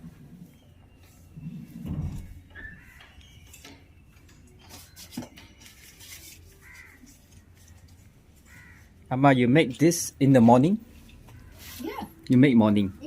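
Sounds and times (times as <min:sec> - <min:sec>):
crow cawing: 0:06.6 - 0:07.1, 0:08.4 - 0:09.0.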